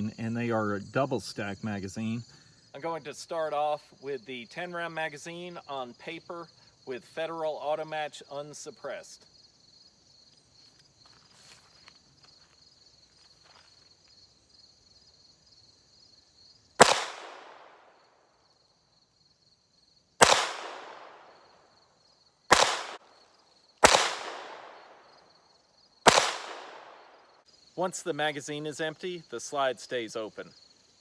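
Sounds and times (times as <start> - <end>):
insects chirping: 0.0 - 31.0
pistol shots: 16.8 - 17.8, 20.2 - 21.4, 22.5 - 23.0, 23.8 - 25.0, 26.1 - 27.2.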